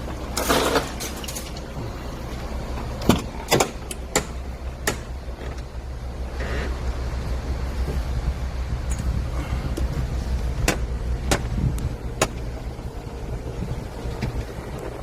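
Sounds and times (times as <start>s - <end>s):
low mechanical hum: 0.0s - 15.0s
sharp knocks and clicks: 3.0s - 5.7s, 10.6s - 11.6s, 12.2s - 12.4s.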